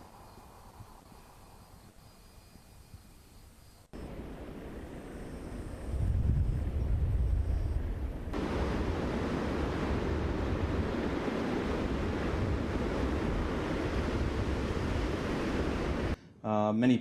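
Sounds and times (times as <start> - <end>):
wind rumble on microphone: 4.0 - 16.2
floodwater rushing: 8.4 - 16.2.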